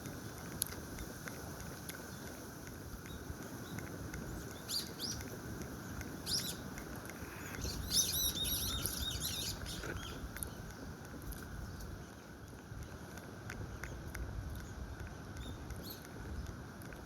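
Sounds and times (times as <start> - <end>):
birds chirping: 3.0 - 11.0.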